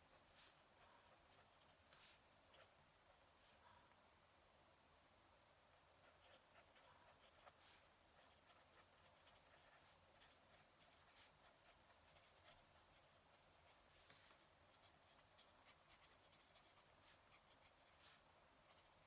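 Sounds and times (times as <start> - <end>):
low hiss: 0.0 - 19.0
pen nib scratching paper: 6.0 - 19.0.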